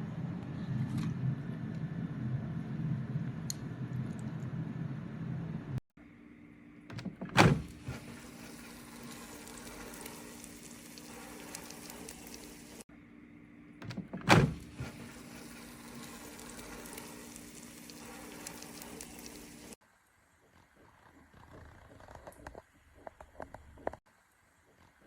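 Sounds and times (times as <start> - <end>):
loud thump: 6.9 - 8.1, 13.8 - 15.0
hiss: 7.5 - 12.8, 14.4 - 19.8
air fryer fan hum: 13.8 - 19.8.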